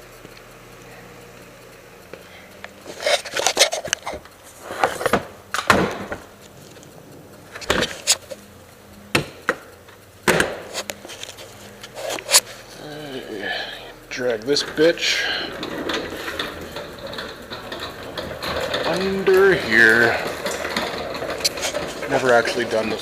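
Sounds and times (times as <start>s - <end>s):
hard objects knocking and clattering: 9.2s - 11.3s, 15.5s - 23.0s.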